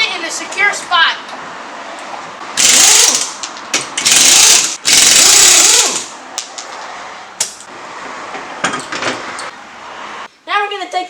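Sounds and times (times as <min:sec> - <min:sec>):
air impact wrench rattling: 0:02.6 - 0:06.1.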